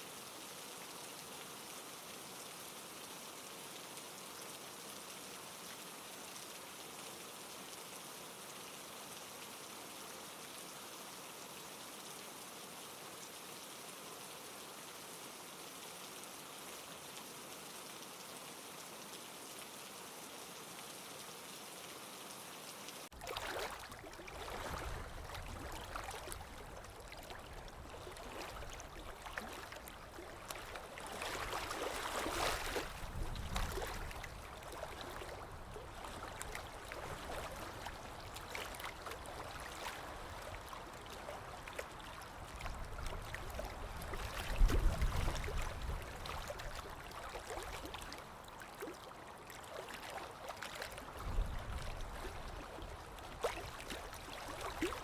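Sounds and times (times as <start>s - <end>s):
water rushing and splashing: 23.1s - 55.0s.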